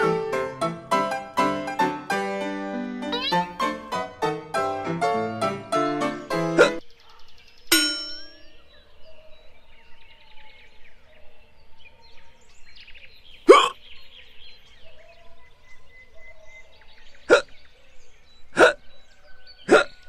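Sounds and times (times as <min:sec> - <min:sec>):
cartoon hiccup sound: 0:03.1 - 0:03.5, 0:06.6 - 0:06.8, 0:13.5 - 0:13.8, 0:17.3 - 0:17.5, 0:18.6 - 0:18.8, 0:19.7 - 0:19.9
bright metallic ding: 0:07.7 - 0:08.5.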